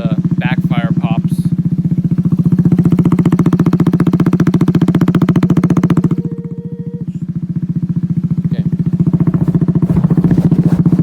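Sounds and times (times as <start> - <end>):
motorcycle engine exhaust pulses: 0.0 - 11.0.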